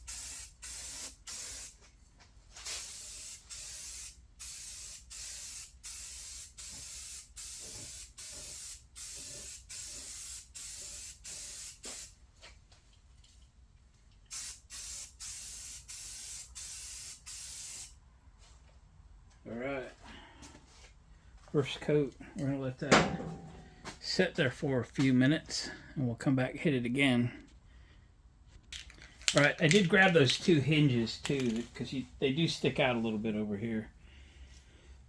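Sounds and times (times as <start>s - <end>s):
spray paint hissing in bursts: 0.0s - 1.9s, 2.6s - 12.2s, 14.3s - 18.0s.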